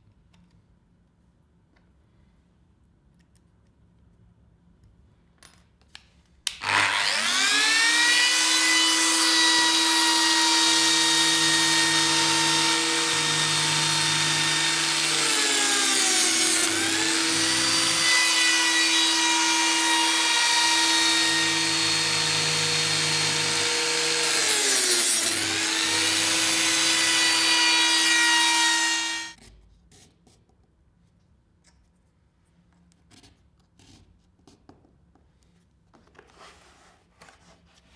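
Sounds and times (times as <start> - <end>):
cutting motor whining: 6.6 - 29.4.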